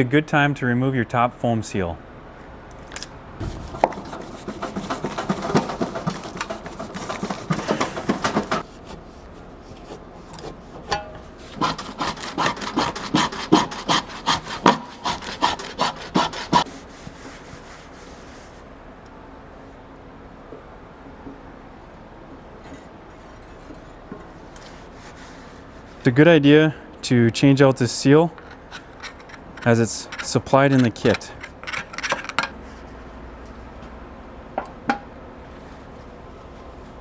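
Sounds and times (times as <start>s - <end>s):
foam seal scraping: 3.4s - 8.7s.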